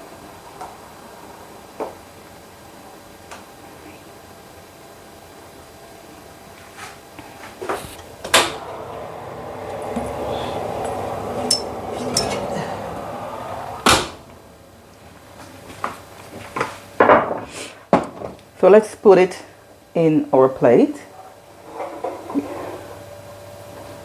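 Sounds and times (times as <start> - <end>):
steady rushing sound: 7.6 - 16.6.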